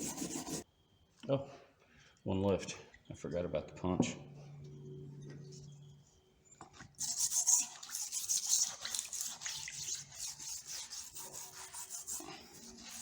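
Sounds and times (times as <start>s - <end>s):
faint low hum: 0.0s - 7.0s
brush scrubbing metal: 7.0s - 13.0s.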